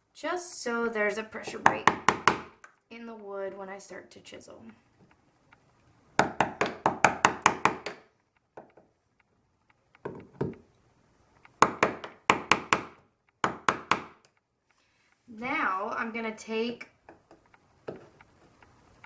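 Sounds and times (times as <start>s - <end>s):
hammer tapping wood chisel: 1.5s - 2.8s, 6.2s - 8.9s, 10.0s - 10.7s, 11.4s - 14.4s, 17.0s - 18.8s.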